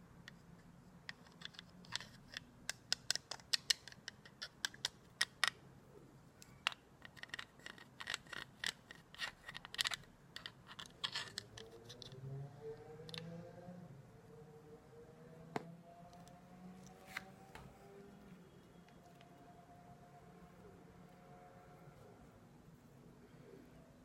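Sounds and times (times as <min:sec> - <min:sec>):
faint rising tone: 0:12.2 - 0:24.0.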